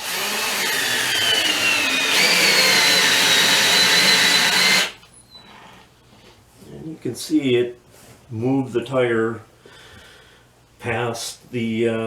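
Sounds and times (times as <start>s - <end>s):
cordless drill motor whine: 0.0s - 5.0s.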